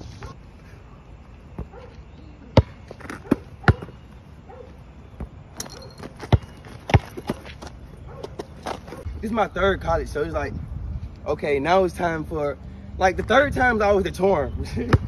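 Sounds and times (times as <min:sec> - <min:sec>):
basketball bouncing on hard floor: 0:02.6 - 0:04.0, 0:06.2 - 0:07.6.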